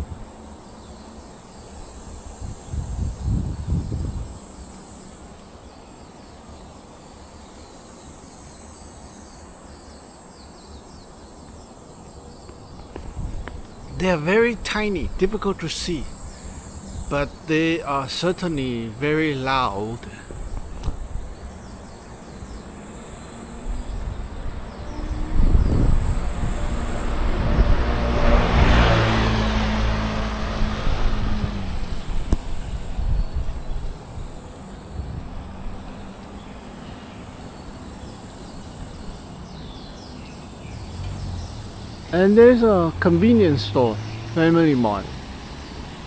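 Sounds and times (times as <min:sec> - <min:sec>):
cicadas droning: 0:00.0 - 0:46.0
motor vehicle passing: 0:12.5 - 0:34.3, 0:40.7 - 0:46.0.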